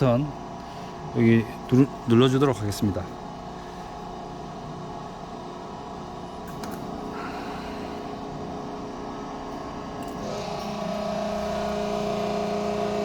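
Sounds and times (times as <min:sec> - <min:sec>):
hydraulic pump running: 0:06.4 - 0:13.0.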